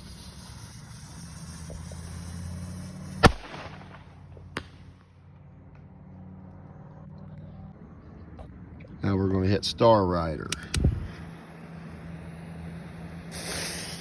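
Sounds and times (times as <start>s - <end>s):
firework fuse hiss: 0.0s - 4.3s, 10.5s - 14.0s
firework shell pop: 3.0s - 4.9s
mortar launch bang: 3.2s - 4.7s.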